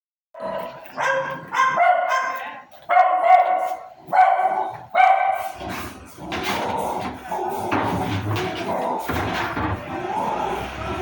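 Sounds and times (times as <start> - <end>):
dog barking: 0.4 - 5.7.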